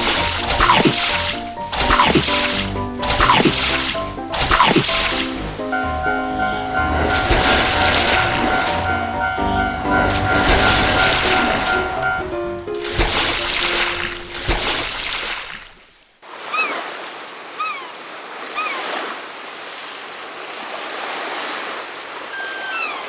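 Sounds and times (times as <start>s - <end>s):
background music: 0.0s - 14.5s
sea surf: 0.0s - 23.0s
falling bird calls: 16.4s - 16.8s, 17.6s - 18.0s, 22.4s - 23.0s.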